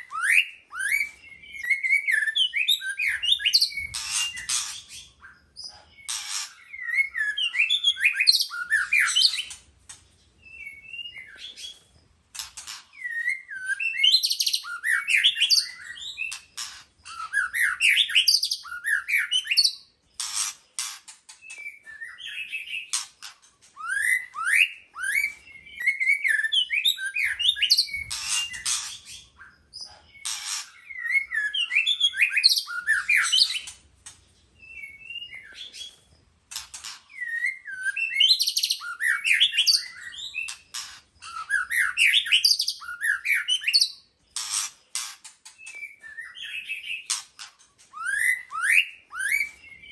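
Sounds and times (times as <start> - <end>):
bird singing whistled phrases: 0.0 - 5.4, 6.6 - 9.6, 13.0 - 16.4, 17.1 - 19.9, 21.5 - 23.0, 23.8 - 29.6, 30.8 - 33.7, 34.6 - 36.0, 37.1 - 40.6, 41.2 - 44.1, 45.6 - 47.2, 47.9 - 49.9.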